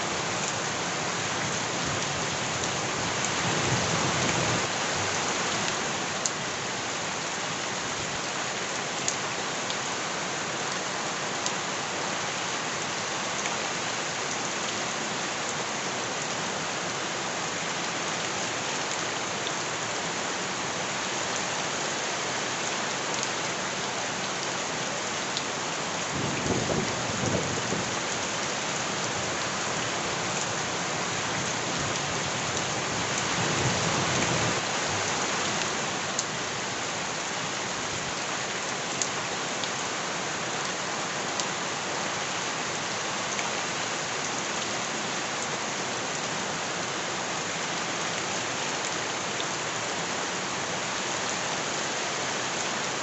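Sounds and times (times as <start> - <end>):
heavy rain pattering: 25.3 - 39.8.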